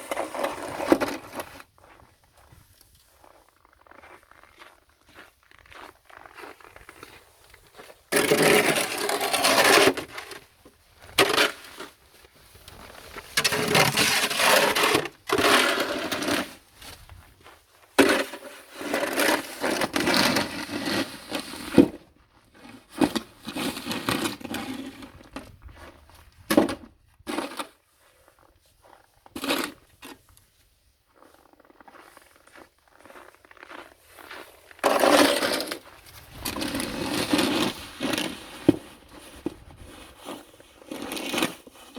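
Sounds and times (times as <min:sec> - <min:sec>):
snow shovel scraping snow: 0:00.0 - 0:01.6, 0:08.1 - 0:10.4, 0:11.2 - 0:12.0, 0:13.0 - 0:16.6, 0:18.0 - 0:22.0, 0:22.6 - 0:25.2, 0:27.3 - 0:28.4, 0:29.3 - 0:30.2, 0:34.8 - 0:41.9.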